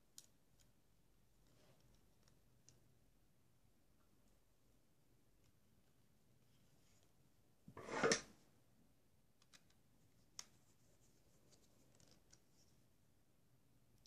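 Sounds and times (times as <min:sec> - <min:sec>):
faint small clicks: 0:09.4 - 0:10.6.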